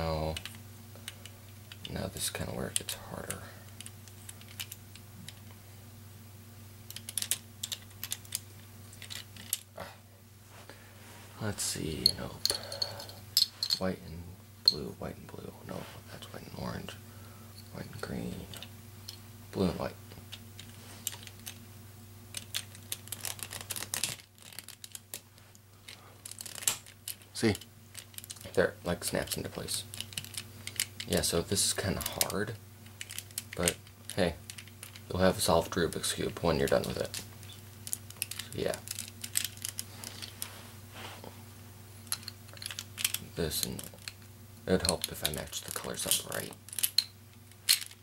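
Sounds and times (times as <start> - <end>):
faint steady hum: 0.0 - 48.0
plastic cube pieces clicking: 6.9 - 8.4.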